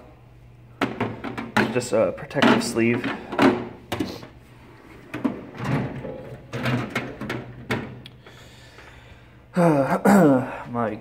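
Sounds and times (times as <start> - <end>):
metal drawers sliding and knocking: 4.9 - 8.0.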